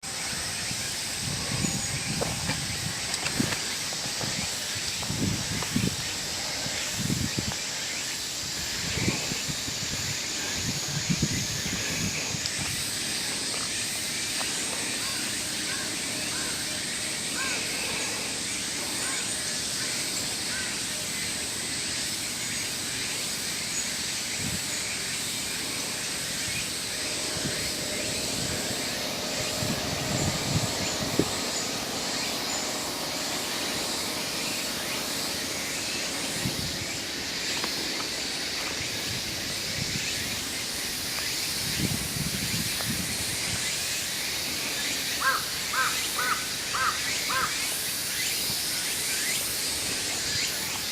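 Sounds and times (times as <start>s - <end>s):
small birds chirping: 0.0s - 50.9s
steady high hiss: 0.0s - 50.9s
crow cawing: 15.0s - 16.7s, 17.4s - 17.8s, 20.5s - 20.8s, 45.2s - 47.6s.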